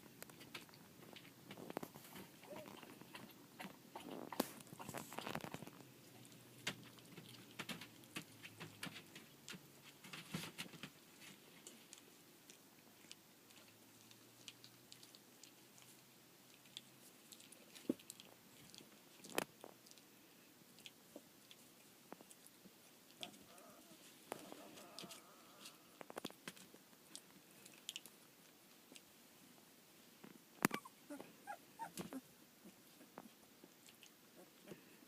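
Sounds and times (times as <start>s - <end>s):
puppies clicking and rustling: 0.0s - 20.1s.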